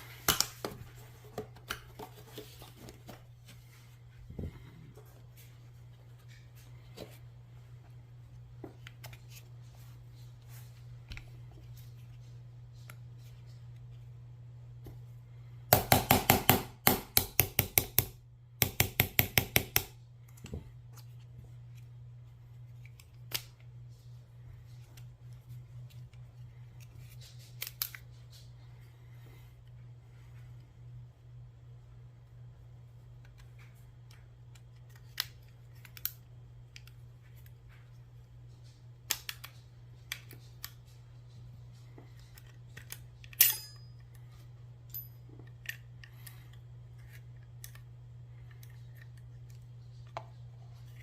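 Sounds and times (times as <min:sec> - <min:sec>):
low electrical hum: 0:00.0 - 0:51.0
pistol parts tapping and clicking: 0:42.3 - 0:44.0.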